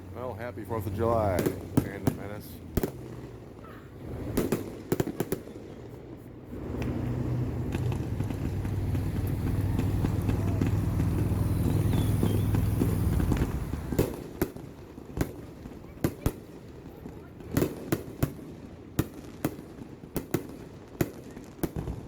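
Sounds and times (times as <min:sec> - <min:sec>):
vehicle engine rumble: 0:00.0 - 0:17.6
firework bangs and crackles: 0:00.0 - 0:22.0.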